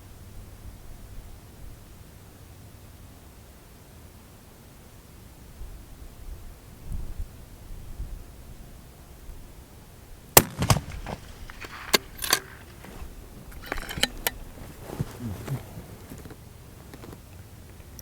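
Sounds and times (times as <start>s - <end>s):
rifle bolt metallic clicks: 10.4s - 14.6s.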